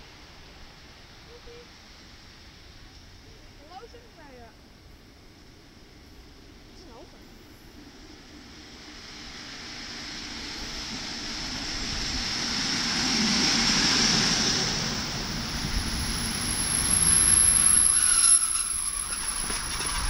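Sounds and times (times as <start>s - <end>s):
electric train running: 7.7s - 20.0s.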